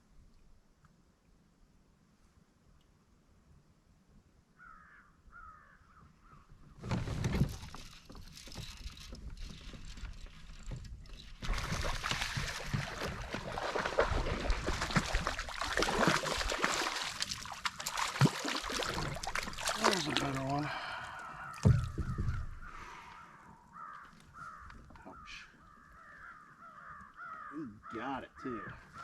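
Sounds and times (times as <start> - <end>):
rustling and clattering of gear: 6.8 - 13.5
water splashing: 7.4 - 22.7.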